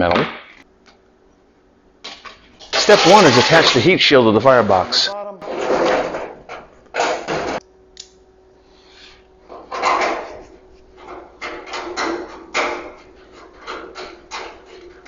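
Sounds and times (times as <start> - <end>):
sheet metal clanking and scraping: 2.6 - 3.9.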